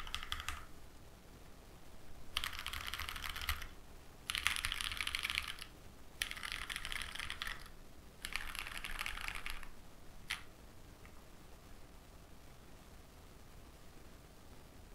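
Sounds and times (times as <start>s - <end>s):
mechanical keyboard typing: 0.0s - 0.7s, 2.4s - 9.7s, 10.3s - 10.5s.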